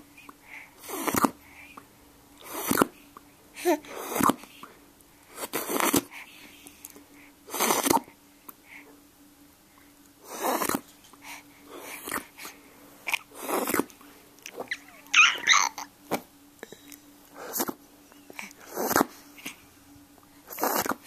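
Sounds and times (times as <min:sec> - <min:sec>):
high voice-like sound: 0:14.7 - 0:15.8.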